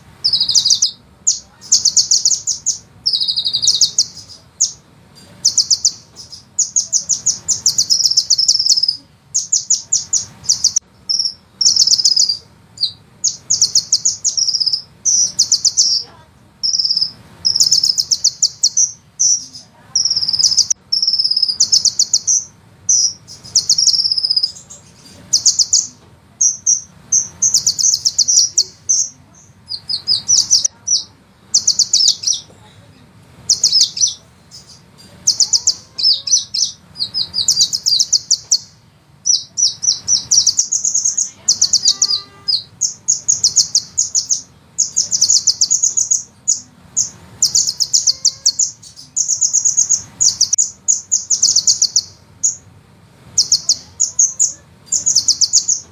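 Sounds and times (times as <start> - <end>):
sunbird trills and chips: 0.1 - 55.9.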